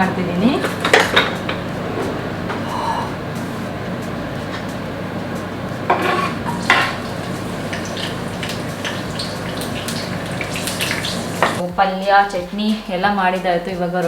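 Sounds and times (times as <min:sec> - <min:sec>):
metal utensils clinking and scraping: 0:00.6 - 0:03.2, 0:05.9 - 0:11.6
steady hiss: 0:02.7 - 0:11.6.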